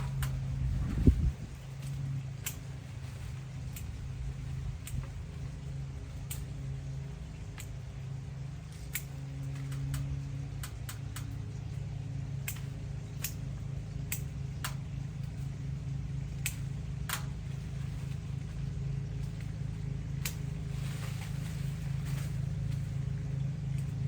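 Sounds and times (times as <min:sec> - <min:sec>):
motor humming: 0:00.0 - 0:24.0
sharp clicks: 0:04.8 - 0:05.1.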